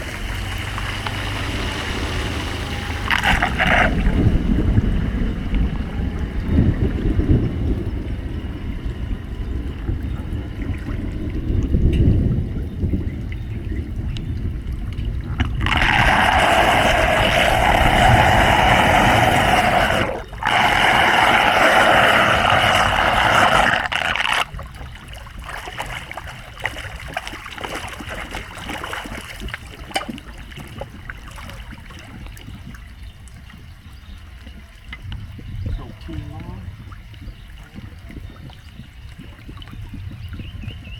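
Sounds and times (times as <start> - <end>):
loud rushing water: 0.0 - 7.7, 15.4 - 32.2
low rumble: 0.0 - 29.8
water trickling and gurgling: 0.0 - 40.9.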